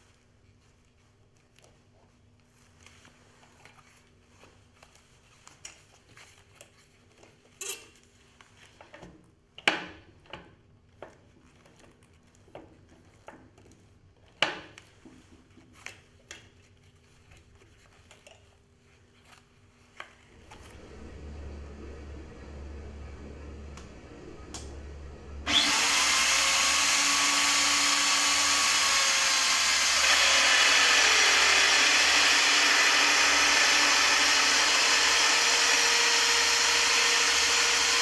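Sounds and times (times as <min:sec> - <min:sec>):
drill motor humming: 0:25.4 - 0:38.0.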